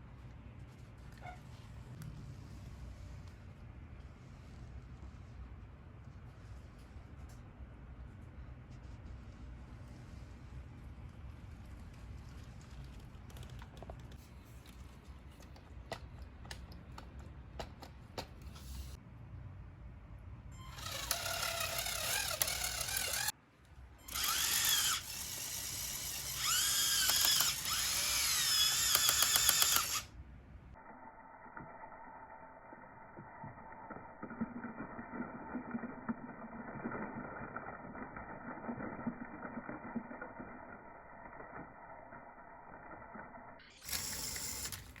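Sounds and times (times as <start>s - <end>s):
small electric motors whining: 20.6s - 23.4s, 24.0s - 30.1s, 31.5s - 45.0s.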